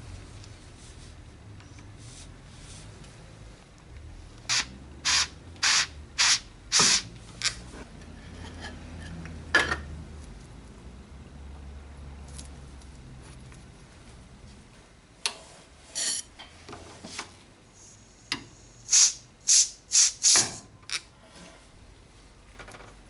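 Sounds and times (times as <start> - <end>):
compressed air hissing: 4.5 - 7.6, 17.7 - 20.7.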